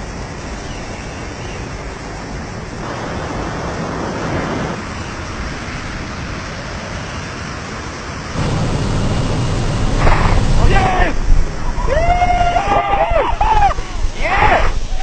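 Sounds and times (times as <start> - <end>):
wind rushing past microphone: 0.0 - 15.0.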